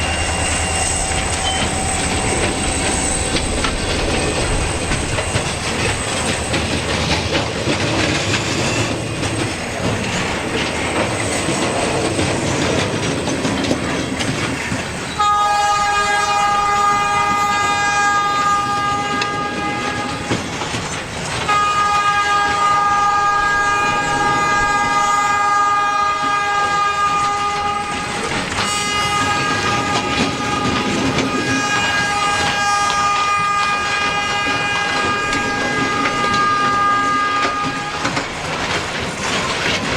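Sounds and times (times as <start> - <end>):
freight train rolling by: 0.0 - 39.9
locomotive air horn blasts: 15.2 - 20.4, 21.4 - 38.2.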